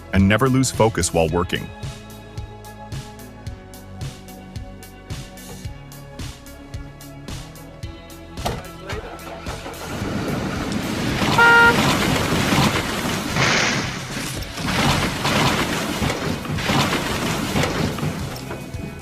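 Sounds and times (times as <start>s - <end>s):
short horn toot: 11.3s - 11.9s.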